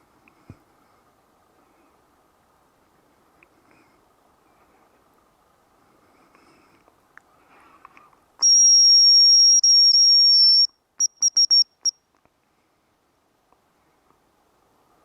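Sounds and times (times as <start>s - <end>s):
decoy whistle: 8.4s - 11.9s.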